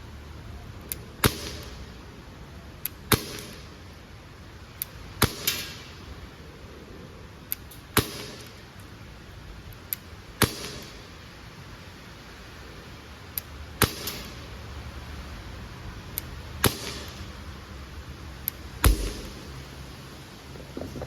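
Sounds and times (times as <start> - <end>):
air pistol shots popping: 1.2 - 1.8, 3.1 - 3.6, 5.2 - 5.8, 10.4 - 11.0, 13.8 - 14.4, 16.6 - 17.2, 18.8 - 19.7.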